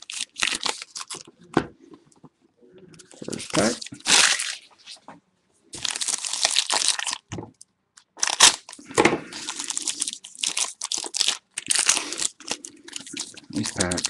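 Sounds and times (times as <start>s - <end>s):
wrappers crinkling and tearing: 0.0s - 1.3s, 3.1s - 5.0s, 5.8s - 7.3s, 8.2s - 14.0s.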